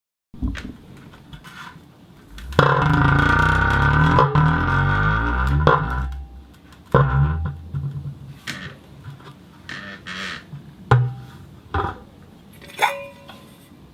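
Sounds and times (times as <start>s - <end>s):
ball rubbing in metal bowl: 2.3s - 6.3s
bowl ringing hum: 2.4s - 7.7s.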